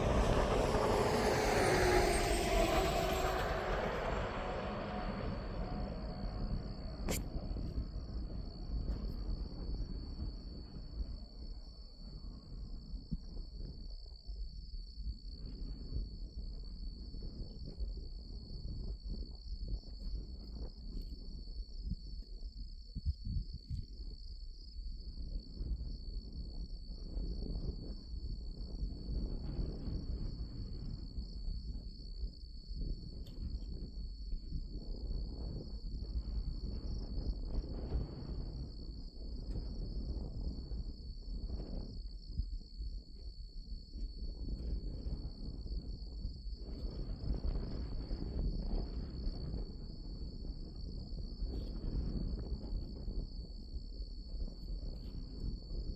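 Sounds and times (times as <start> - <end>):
low rumble: 0.0 - 11.4
crickets trilling: 0.0 - 55.9.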